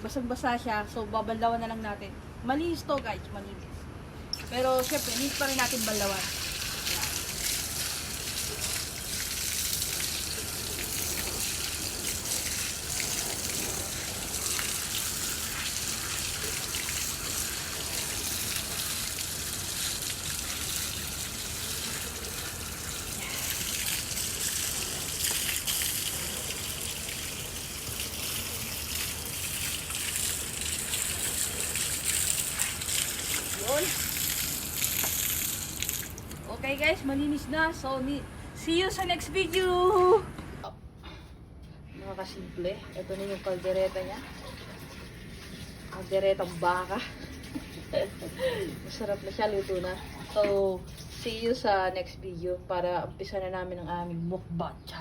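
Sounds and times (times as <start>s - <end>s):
water running: 4.3s - 37.5s, 42.0s - 52.1s.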